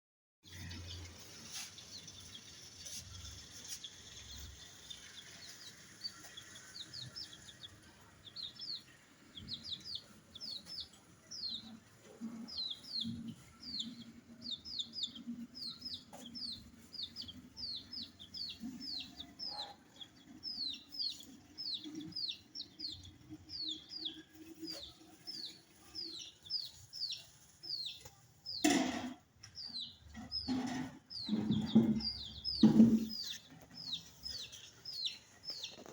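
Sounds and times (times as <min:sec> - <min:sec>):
chickens clucking: 0:00.5 - 0:35.9
chicks peeping: 0:00.5 - 0:35.9.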